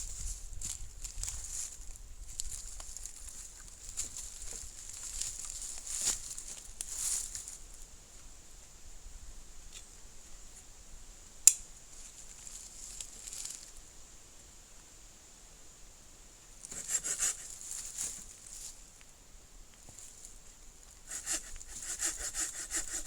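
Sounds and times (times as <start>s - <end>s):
hand saw cutting wood: 16.7s - 17.6s, 21.1s - 23.0s.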